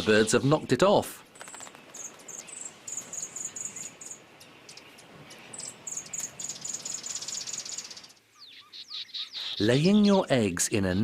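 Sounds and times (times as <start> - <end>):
crickets chirping: 1.6 - 8.2.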